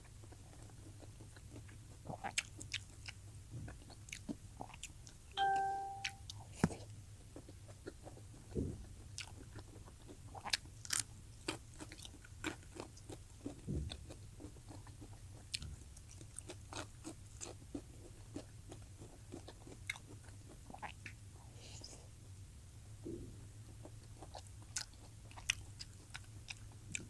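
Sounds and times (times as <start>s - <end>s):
person chewing and crunching food: 0.0s - 21.2s, 23.4s - 27.0s
low steady hum: 5.3s - 6.4s.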